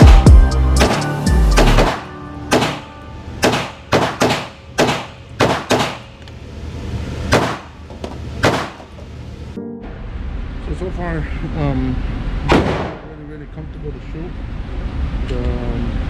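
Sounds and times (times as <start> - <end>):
background music: 0.0 - 4.4, 9.6 - 10.8
pistol shots in indoor range: 1.8 - 6.2, 7.3 - 7.7, 8.4 - 8.8, 12.5 - 13.1.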